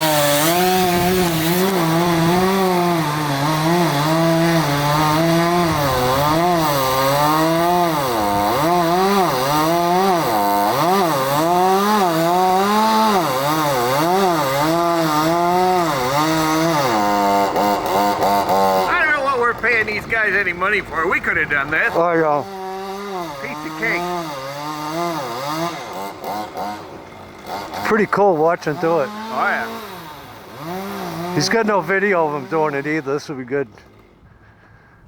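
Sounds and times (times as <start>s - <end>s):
chainsaw cutting wood: 0.0s - 34.8s.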